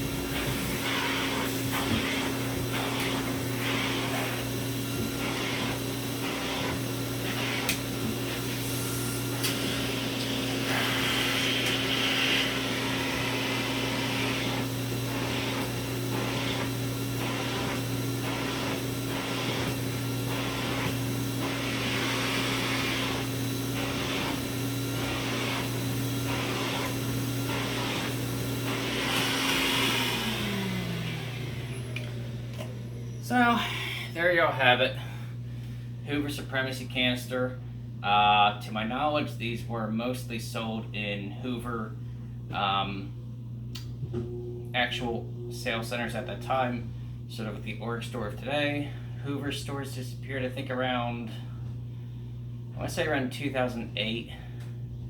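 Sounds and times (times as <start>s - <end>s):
vacuum motor winding down: 0.0s - 35.1s
vacuum cleaner humming: 0.0s - 37.7s, 43.8s - 47.6s.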